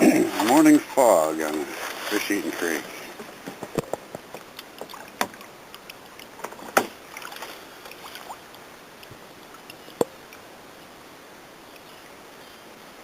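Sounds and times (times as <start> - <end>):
paddle splashing in water: 0.0 - 10.3
paddle knocking against kayak: 6.4 - 7.0.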